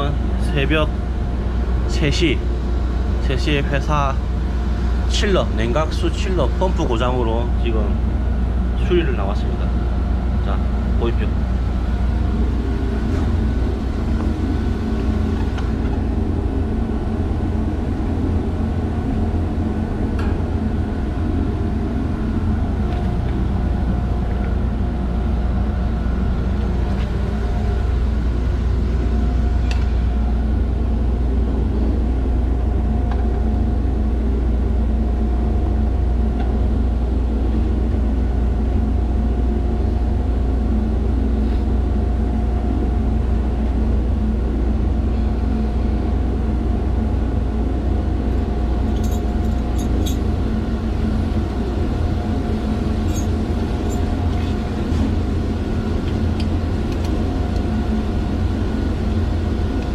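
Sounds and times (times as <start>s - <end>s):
machinery low rumble and hum: 0.0s - 59.9s.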